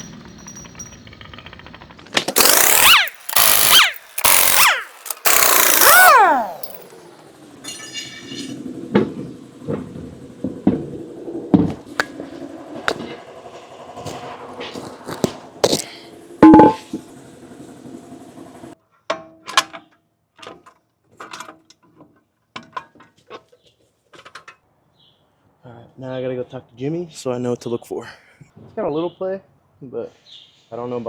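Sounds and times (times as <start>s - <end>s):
metal tools and parts clanking: 0.0s - 8.6s, 14.7s - 17.0s
loud ringing clank: 7.6s - 8.6s, 16.4s - 17.0s.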